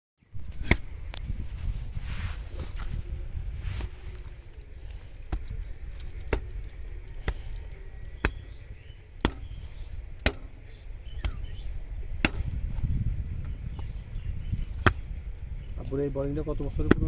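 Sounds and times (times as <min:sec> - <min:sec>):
wind rumble on microphone: 0:00.2 - 0:17.0
sharp knocking: 0:09.2 - 0:09.6, 0:10.2 - 0:10.6.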